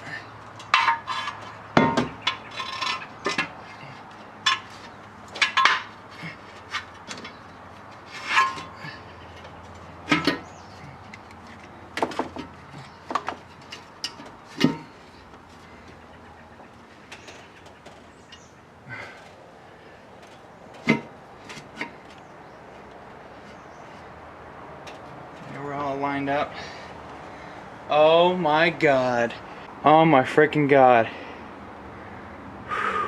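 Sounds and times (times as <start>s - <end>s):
metal parts and tools clinking: 0.5s - 15.0s.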